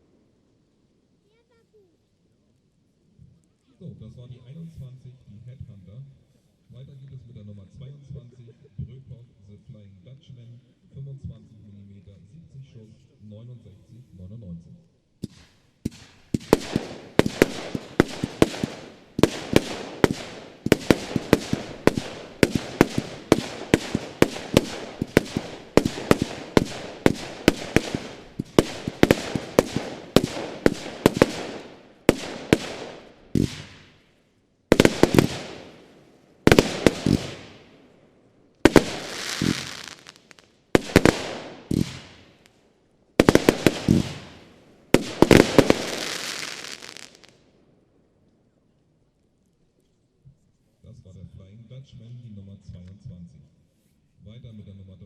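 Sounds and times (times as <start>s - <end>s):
firework battery firing: 15.2s - 34.1s, 34.7s - 37.8s, 38.6s - 42.6s, 43.2s - 47.4s
firework hiss: 15.2s - 34.1s, 34.7s - 37.7s, 38.6s - 42.6s, 43.2s - 47.4s.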